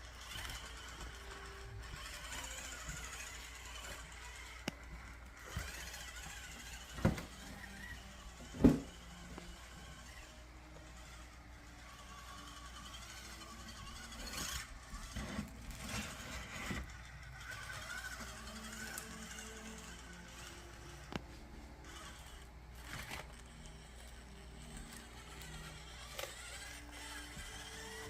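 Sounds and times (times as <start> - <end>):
small electric motor humming: 0.0 - 28.0.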